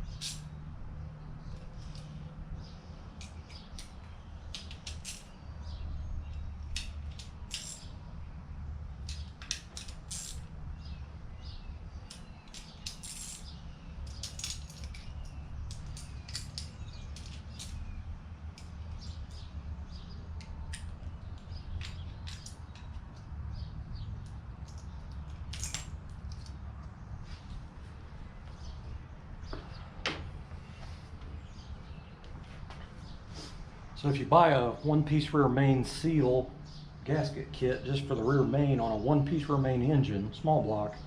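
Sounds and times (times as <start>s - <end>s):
steady low hum: 0.0s - 41.0s
metallic clicks of tools: 0.2s - 0.5s, 6.3s - 7.9s, 12.0s - 17.9s.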